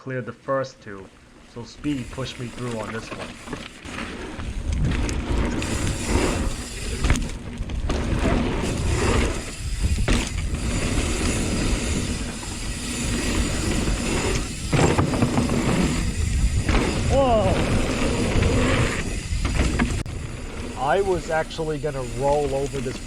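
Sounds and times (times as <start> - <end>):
wind rumbling on microphone: 1.9 - 21.2
tyres on dirt: 1.9 - 23.0
bike clattering on landings: 12.3 - 17.1.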